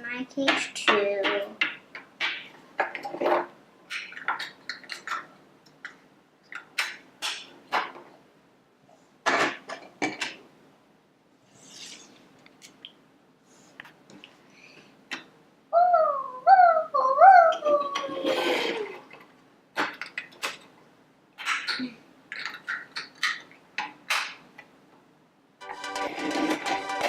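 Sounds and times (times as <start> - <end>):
plastic toys clicking and clattering: 0.4 - 8.1, 18.0 - 20.8, 21.4 - 24.7.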